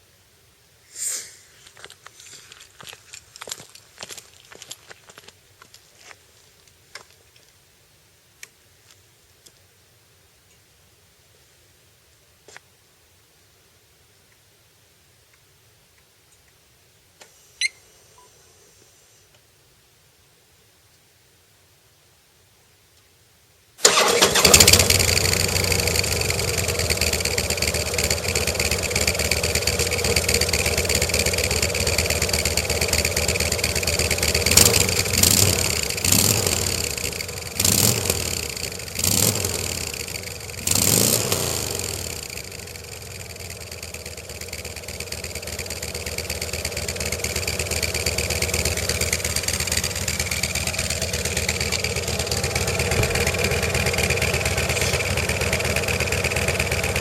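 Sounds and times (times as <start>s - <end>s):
motorcycle throttle blips: 23.8s - 57.0s
motorcycle engine idling: 23.9s - 57.0s.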